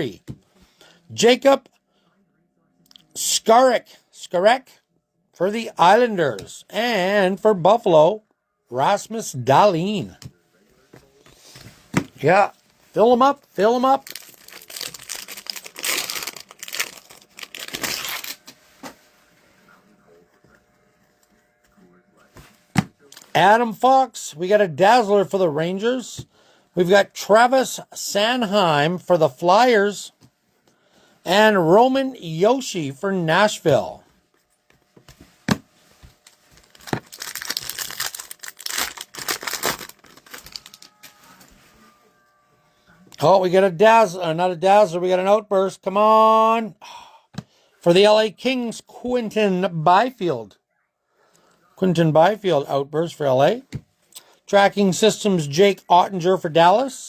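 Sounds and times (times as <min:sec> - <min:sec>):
foil wrapper crinkling: 0:13.8 - 0:18.6, 0:36.1 - 0:41.2.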